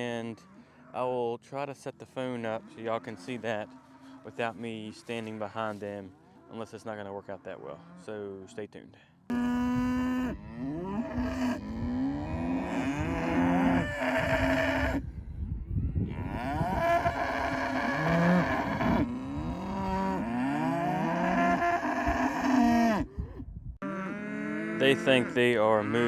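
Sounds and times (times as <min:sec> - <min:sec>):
cattle mooing: 0:09.3 - 0:15.0, 0:16.1 - 0:23.1, 0:23.8 - 0:26.0.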